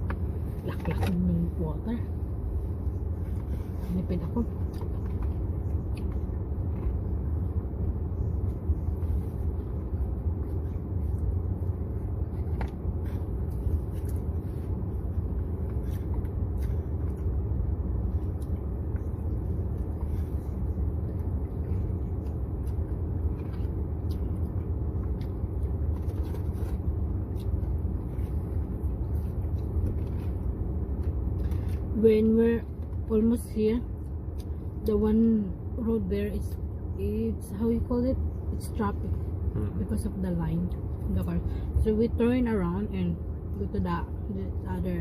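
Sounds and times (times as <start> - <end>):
car cabin rumble: 0.0 - 34.0.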